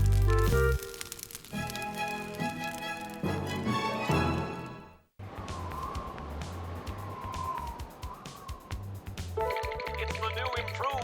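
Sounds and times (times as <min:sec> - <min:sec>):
light orchestral music: 0:01.6 - 0:05.1, 0:09.4 - 0:11.0.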